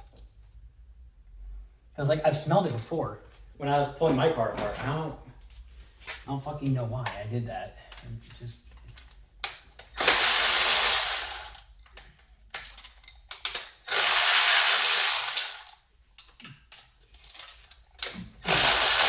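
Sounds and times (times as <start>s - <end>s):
powered ratchet whirring: 10.0s - 11.6s, 13.9s - 15.7s, 18.4s - 19.0s.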